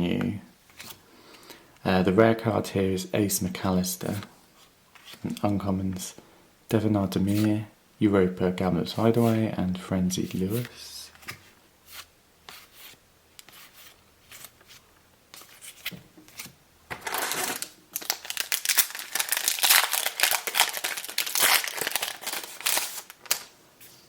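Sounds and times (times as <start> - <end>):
wrapper torn open and crinkled: 17.0 - 23.5.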